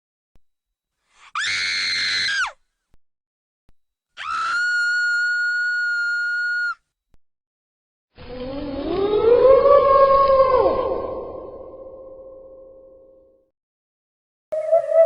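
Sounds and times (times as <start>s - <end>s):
high-pitched screams: 1.3s - 2.6s, 4.2s - 6.8s, 8.4s - 12.0s.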